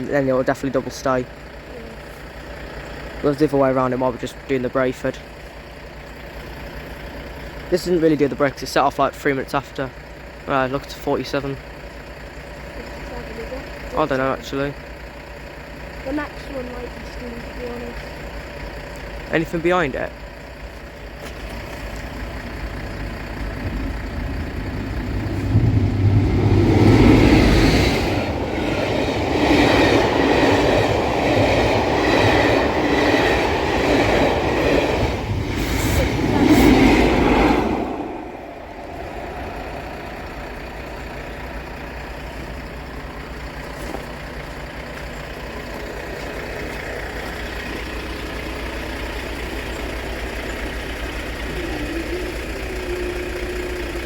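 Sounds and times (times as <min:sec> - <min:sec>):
wheels over rail joints: 0:00.0 - 0:54.0
low rumble: 0:20.5 - 0:47.7
train clattering past: 0:22.0 - 0:43.7.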